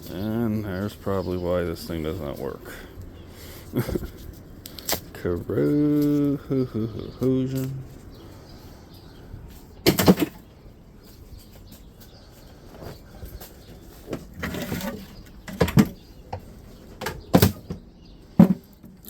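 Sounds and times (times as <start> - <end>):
knocks and clunks of parts: 9.8 - 10.5, 14.0 - 19.0
scraping: 11.2 - 18.8.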